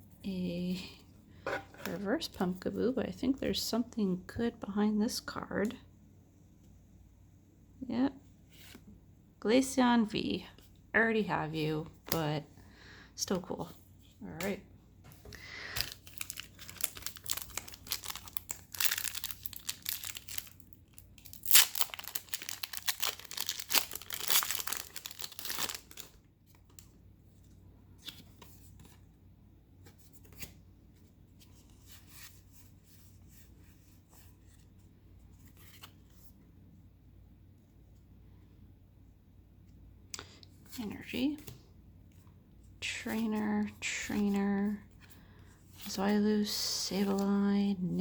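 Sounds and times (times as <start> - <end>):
foil wrapper tearing and crinkling: 15.6 - 26.2.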